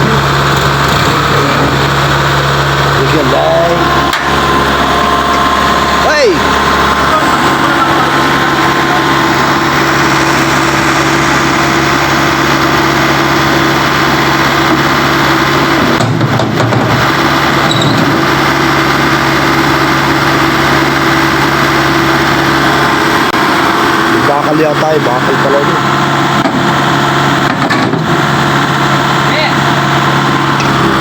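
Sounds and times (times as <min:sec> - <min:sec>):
vehicle engine running: 0:00.0 - 0:31.0.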